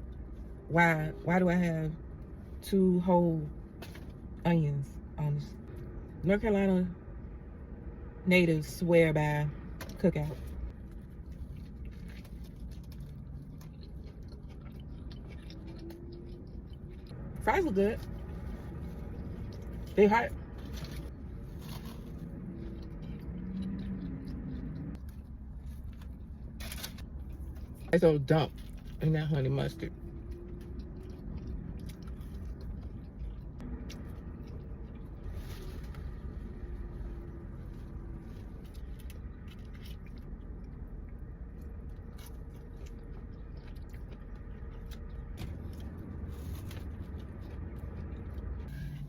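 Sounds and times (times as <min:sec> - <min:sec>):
steady low rumble: 0:00.0 - 0:49.0
person chewing fries: 0:10.4 - 0:49.0.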